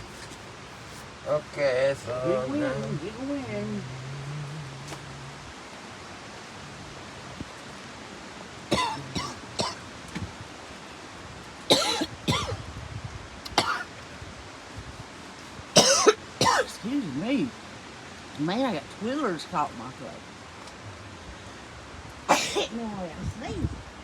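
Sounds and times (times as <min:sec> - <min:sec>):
man clearing his throat: 0:08.7 - 0:09.8, 0:11.7 - 0:12.6, 0:15.8 - 0:16.7, 0:22.3 - 0:22.7
man coughing: 0:08.7 - 0:09.8, 0:11.7 - 0:12.6, 0:13.6 - 0:13.9, 0:15.8 - 0:16.8, 0:22.3 - 0:22.7.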